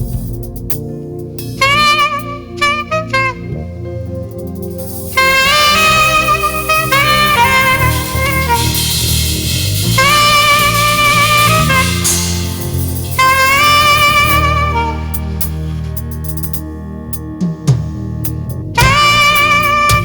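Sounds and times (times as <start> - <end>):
bass line: 0.0 - 20.0
saxophone melody: 1.4 - 16.3, 18.8 - 20.0
band accompaniment: 5.0 - 16.0, 18.8 - 20.0.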